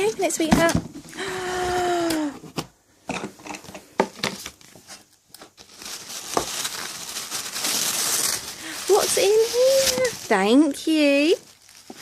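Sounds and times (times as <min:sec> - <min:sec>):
packaging crinkling and tapping: 0:03.2 - 0:12.0
paper and wrapping rustling: 0:03.4 - 0:12.0.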